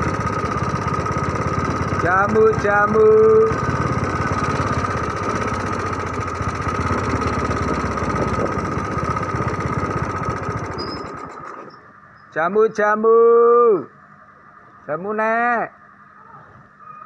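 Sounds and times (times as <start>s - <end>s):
small engine running: 0.0s - 12.0s
engine whine: 0.0s - 12.4s.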